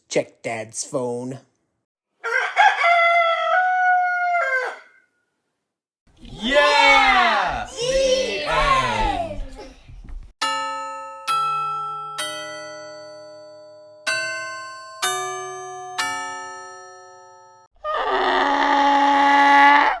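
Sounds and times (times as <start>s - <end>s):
bell-like chime tune: 10.4s - 17.7s.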